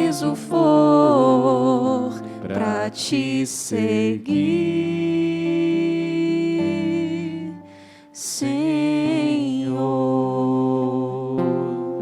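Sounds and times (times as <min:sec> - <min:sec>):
person singing worship song: 0:00.0 - 0:12.0.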